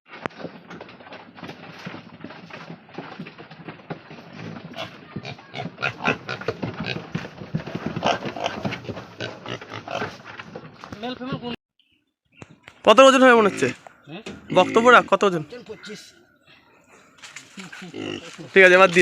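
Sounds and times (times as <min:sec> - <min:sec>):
piglets squealing and grunting: 0:04.8 - 0:07.0, 0:14.4 - 0:15.2, 0:17.8 - 0:18.4
knocking and clattering: 0:05.6 - 0:11.4.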